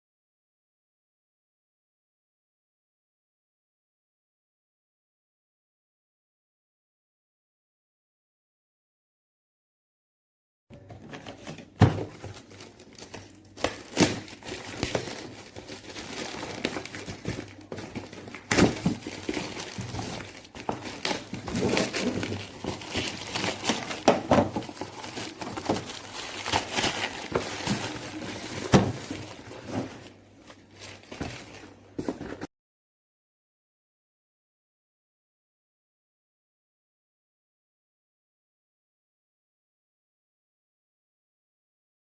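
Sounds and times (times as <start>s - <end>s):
plastic packaging crinkling: 11.0s - 32.5s.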